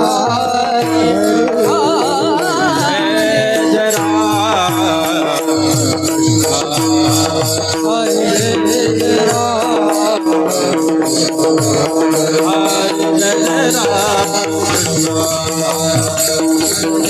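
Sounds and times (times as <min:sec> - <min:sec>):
jingling cymbals: 0:00.0 - 0:17.0
wavering melody line: 0:11.0 - 0:17.0.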